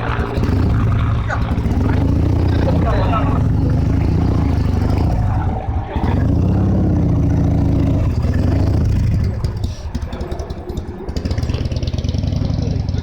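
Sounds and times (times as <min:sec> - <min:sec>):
motorcycle engine revving: 0:00.0 - 0:13.0.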